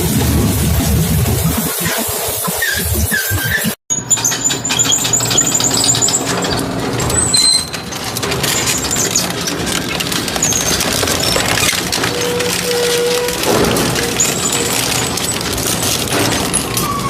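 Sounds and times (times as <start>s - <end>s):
high metal-on-metal squeals: 1.8s - 9.6s, 10.3s - 17.0s
shredder grinding scrap metal: 4.1s - 17.0s.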